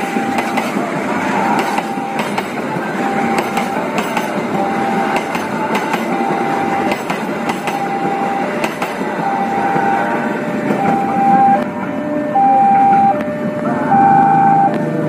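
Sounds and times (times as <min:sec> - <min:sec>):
passing train with clacking wheels: 0:00.0 - 0:15.0
level crossing alarm beeping: 0:01.5 - 0:03.6, 0:06.1 - 0:15.0.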